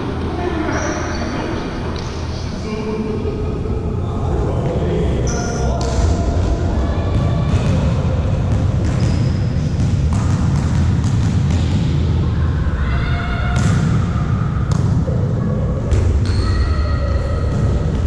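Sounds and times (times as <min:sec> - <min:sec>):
volleyballs hit and bouncing: 0:05.2 - 0:12.4, 0:13.4 - 0:18.0.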